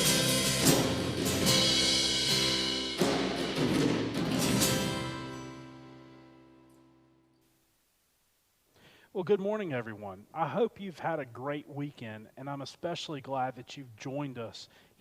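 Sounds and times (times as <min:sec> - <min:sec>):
sharp drum hits: 0:00.0 - 0:05.4
band playing instrumental music: 0:00.0 - 0:05.7.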